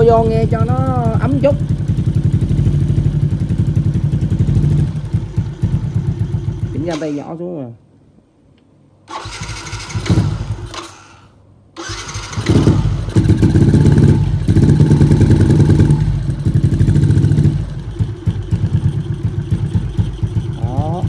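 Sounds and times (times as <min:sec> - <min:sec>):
motorcycle engine revving and idling: 0:00.0 - 0:07.2, 0:09.2 - 0:11.1, 0:11.8 - 0:21.0.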